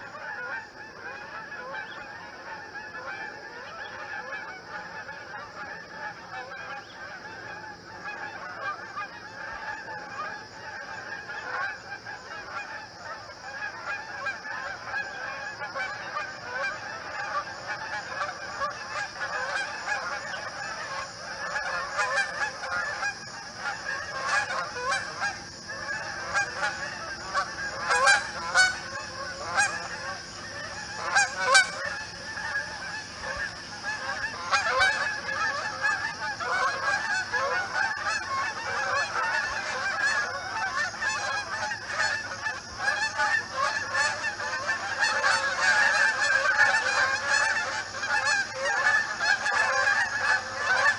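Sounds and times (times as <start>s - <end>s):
geese honking: 0.0s - 50.9s.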